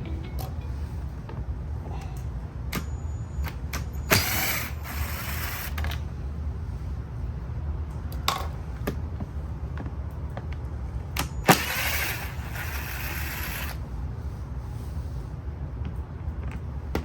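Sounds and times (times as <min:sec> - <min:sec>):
steady low hum: 0:00.0 - 0:17.0
short rattling burst: 0:11.4 - 0:13.8.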